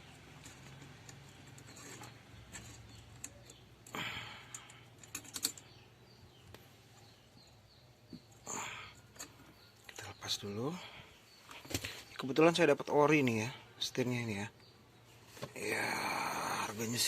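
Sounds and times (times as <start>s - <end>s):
allen key and screws clicking: 0.0s - 5.8s.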